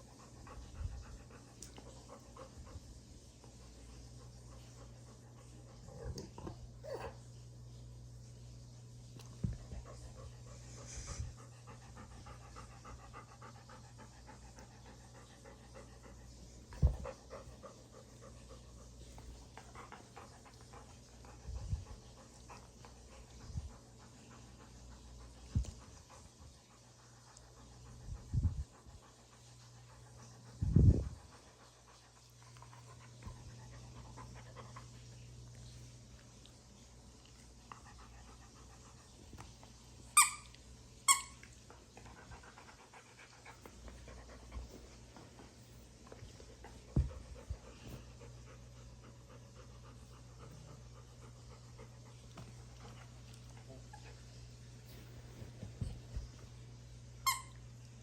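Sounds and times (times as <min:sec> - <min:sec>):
dog panting: 0:00.0 - 0:06.1, 0:09.4 - 0:39.8, 0:41.6 - 0:56.4
squeaky dog toy squeaking: 0:40.2 - 0:40.5, 0:57.2 - 0:57.6.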